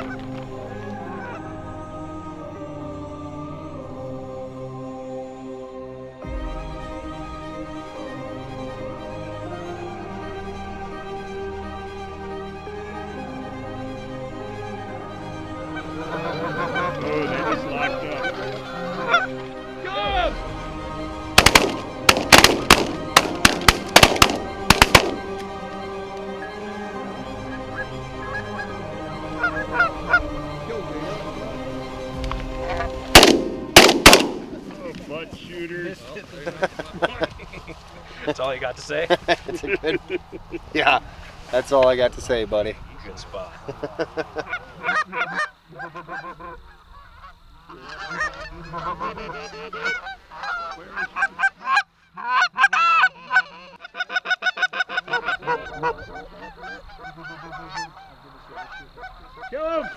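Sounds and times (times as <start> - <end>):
geese honking: 0.0 - 3.4, 7.4 - 38.7, 43.1 - 59.9
shotgun blasts: 21.4 - 25.3, 33.1 - 34.9.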